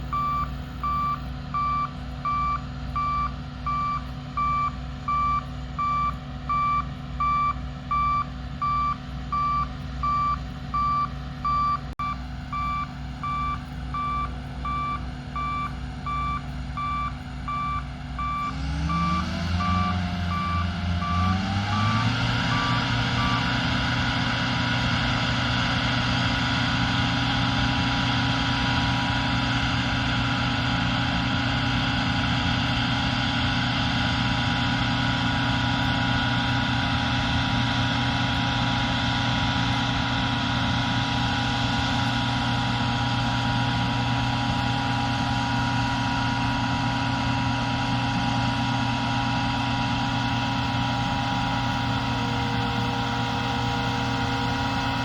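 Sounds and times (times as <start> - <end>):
reversing beeper: 0.0 - 24.2, 49.5 - 55.0
combine harvester diesel engine: 0.0 - 55.0.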